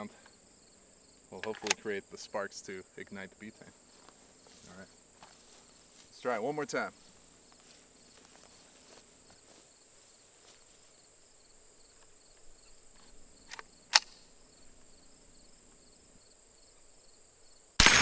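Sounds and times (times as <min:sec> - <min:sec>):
crickets chirping: 0:00.0 - 0:18.0
gunfire: 0:17.8 - 0:18.0
sharp loud crack: 0:17.8 - 0:18.0.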